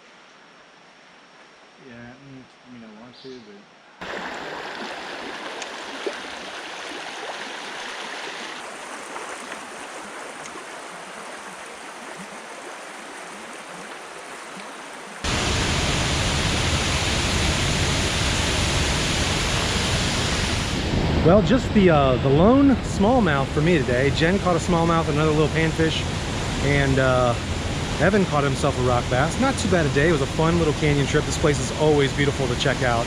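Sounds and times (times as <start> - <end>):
creek water flowing over rocks: 4.0 - 15.3
waterfall rushing: 15.2 - 33.0.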